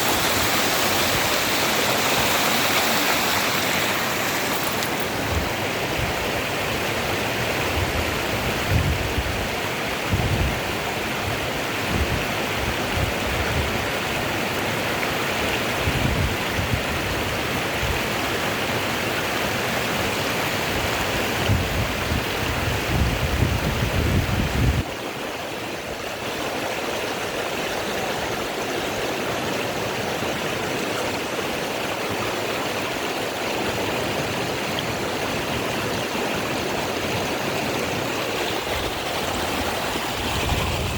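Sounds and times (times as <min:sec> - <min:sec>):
waterfall rushing: 0:00.0 - 0:08.8, 0:24.9 - 0:40.9.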